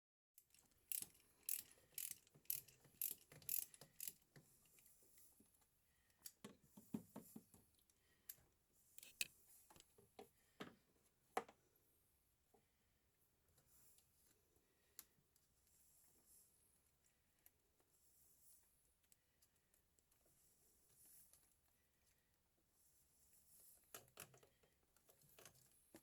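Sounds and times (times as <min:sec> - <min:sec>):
ratchet wrench clicking: 0:00.9 - 0:04.2.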